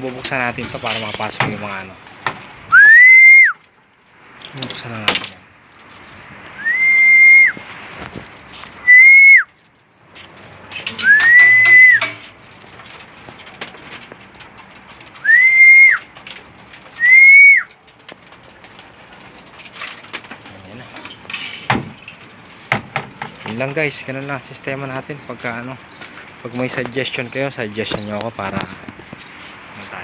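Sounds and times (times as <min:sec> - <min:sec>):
faint clicks and rustles: 0:00.0 - 0:02.8, 0:03.6 - 0:06.6, 0:07.5 - 0:08.8, 0:09.4 - 0:30.0
loud high whistles: 0:02.7 - 0:03.6, 0:06.6 - 0:07.6, 0:08.9 - 0:09.4, 0:11.0 - 0:12.1, 0:15.2 - 0:16.0.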